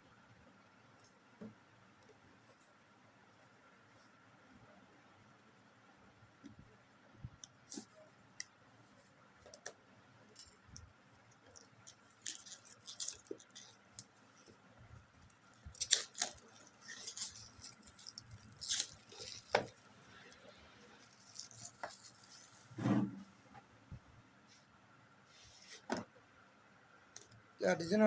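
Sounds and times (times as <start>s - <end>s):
packaging rustling: 15.7s - 20.3s.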